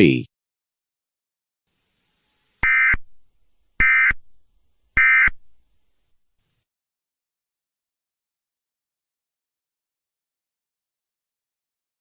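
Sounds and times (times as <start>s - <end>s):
digital data tone bursts: 2.6s - 3.0s.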